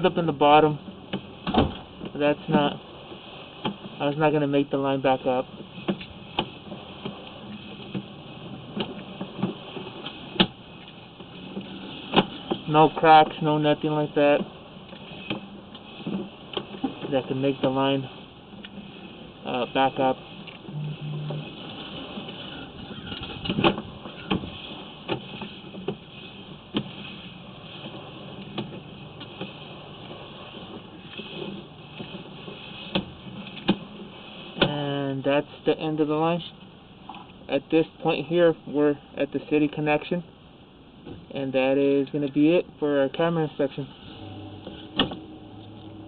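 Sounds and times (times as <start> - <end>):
low steady hum: 0.0 - 46.0
steady hiss: 0.0 - 46.0.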